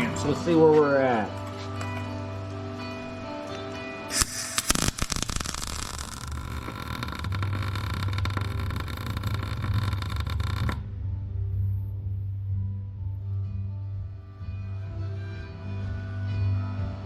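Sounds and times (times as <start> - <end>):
welding arc crackling: 4.1 - 10.8.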